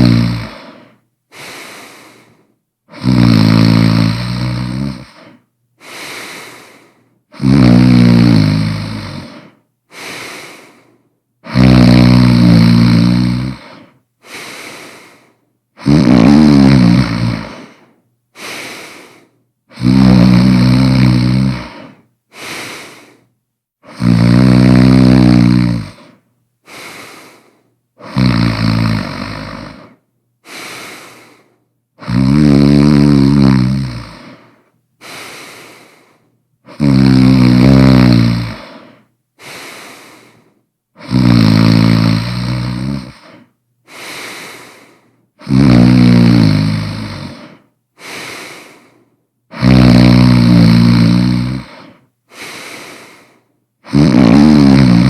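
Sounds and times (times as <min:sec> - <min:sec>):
quiet breath: 0:00.0 - 0:03.2, 0:04.3 - 0:07.4, 0:09.0 - 0:11.5, 0:13.4 - 0:15.8, 0:17.3 - 0:19.9, 0:21.1 - 0:24.2, 0:25.2 - 0:28.2, 0:29.1 - 0:32.2, 0:33.8 - 0:41.1, 0:42.0 - 0:45.5, 0:46.8 - 0:49.6, 0:50.2 - 0:55.0
person snoring loudly: 0:00.0 - 0:10.8, 0:11.4 - 0:15.2, 0:15.8 - 0:23.2, 0:23.8 - 0:55.0.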